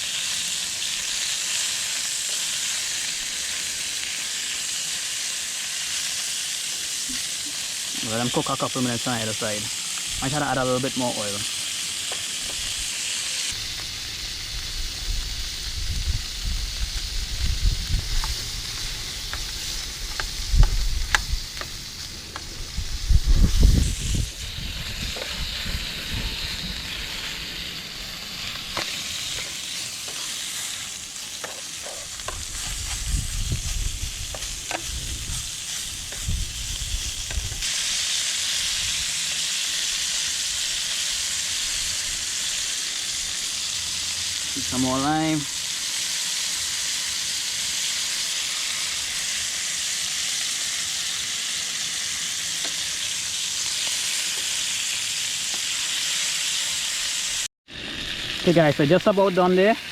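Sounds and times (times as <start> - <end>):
fish frying in hot oil: 0.0 - 59.9
low rumbles: 13.6 - 28.8.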